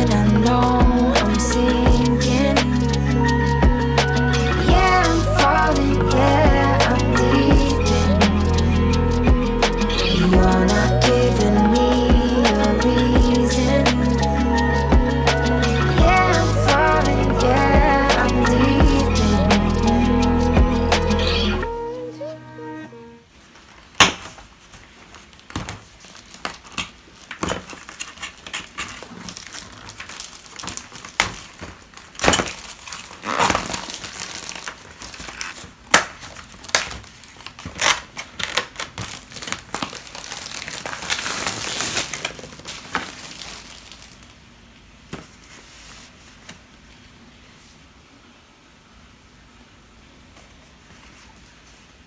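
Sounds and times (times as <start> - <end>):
packaging crinkling and rustling: 23.4 - 46.7.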